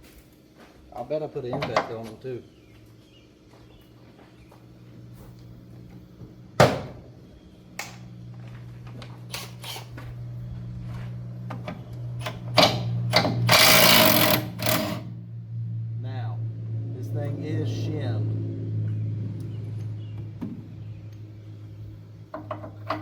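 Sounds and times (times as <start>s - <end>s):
steady low hum: 2.2s - 23.0s
impact wrench running: 9.3s - 10.0s, 12.2s - 15.2s.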